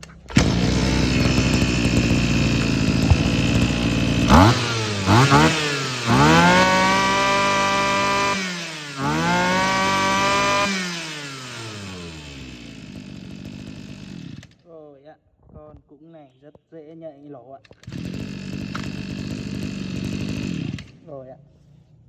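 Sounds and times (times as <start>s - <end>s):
brush cutter engine revving: 0.0s - 14.6s, 17.7s - 21.1s.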